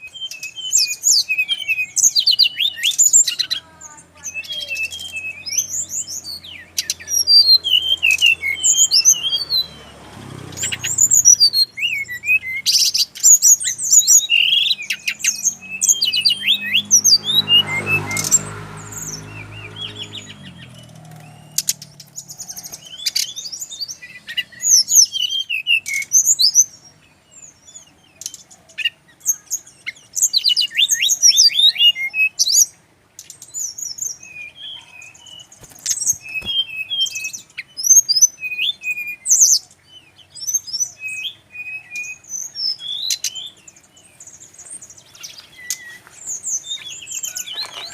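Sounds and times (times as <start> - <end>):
bird twittering song: 0.0 - 47.9.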